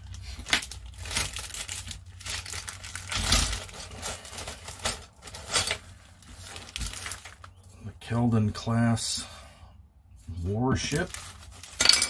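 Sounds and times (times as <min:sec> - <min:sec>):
plastic packaging crinkling: 0:00.0 - 0:07.6, 0:10.8 - 0:11.8.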